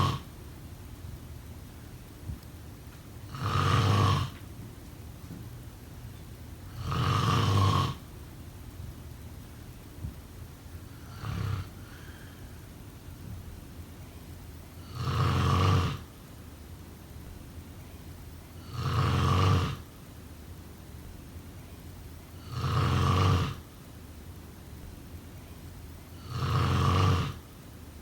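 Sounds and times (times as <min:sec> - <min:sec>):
loud snoring: 0:00.0 - 0:00.3, 0:03.3 - 0:04.4, 0:06.7 - 0:08.1, 0:11.0 - 0:12.3, 0:14.8 - 0:16.1, 0:18.6 - 0:19.8, 0:22.4 - 0:23.6, 0:26.1 - 0:27.5.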